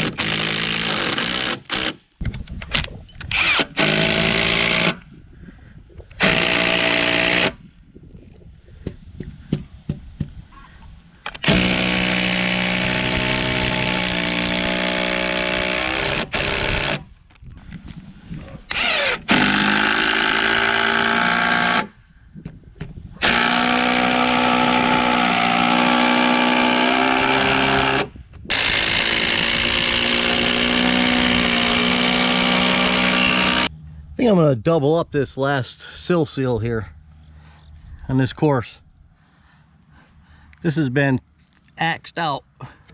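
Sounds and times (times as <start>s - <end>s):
drill driving screws into timber: 0.0s - 2.1s, 3.2s - 5.0s, 6.2s - 7.6s, 11.3s - 17.1s, 18.7s - 21.9s, 23.2s - 33.7s.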